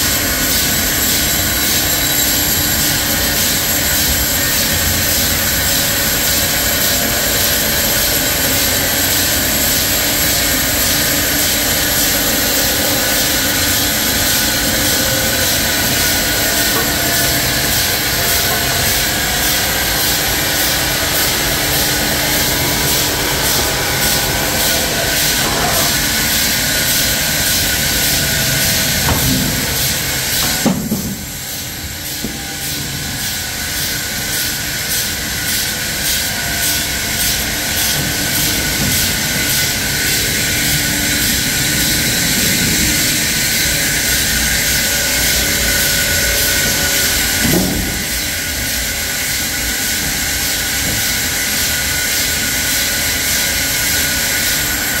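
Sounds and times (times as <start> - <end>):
sawmill machinery hiss and drone: 0.0 - 55.0
knocks: 29.0 - 31.2.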